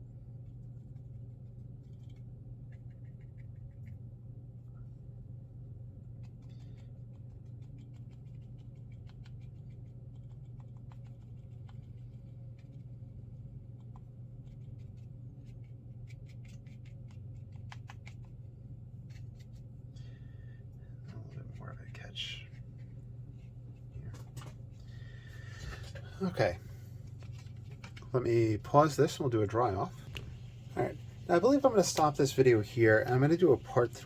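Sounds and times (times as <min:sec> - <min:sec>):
steady low hum: 0:00.0 - 0:34.0
brush tapping and scraping paper: 0:06.2 - 0:13.1, 0:13.7 - 0:19.7, 0:27.0 - 0:28.3, 0:29.7 - 0:34.0.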